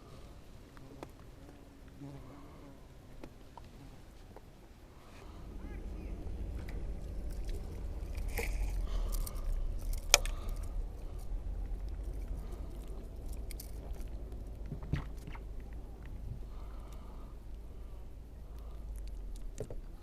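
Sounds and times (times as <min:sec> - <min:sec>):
low steady rumble: 0:00.0 - 0:20.0
light clicks and rattles: 0:06.0 - 0:17.6.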